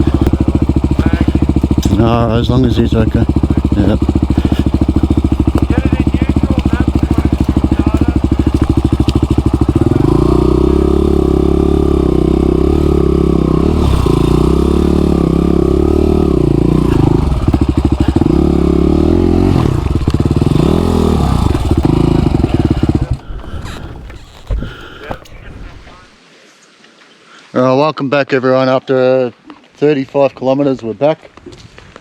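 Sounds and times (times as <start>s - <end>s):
motorcycle engine revving: 0.0s - 26.2s.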